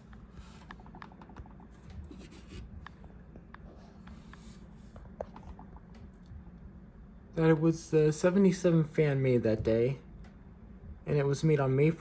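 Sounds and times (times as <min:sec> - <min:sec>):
soft rubbing and scratching: 0:00.0 - 0:06.1
steady low hum: 0:00.0 - 0:12.0.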